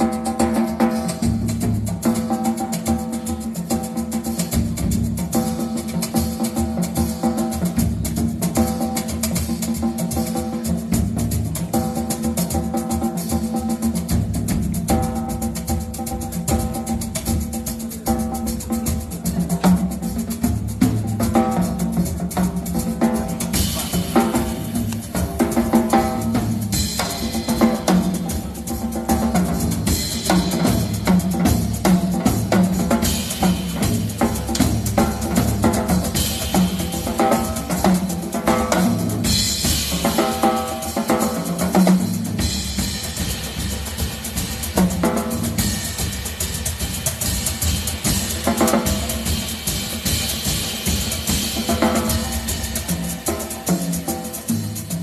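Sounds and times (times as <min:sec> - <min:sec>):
drum kit playing: 0:00.0 - 0:55.0.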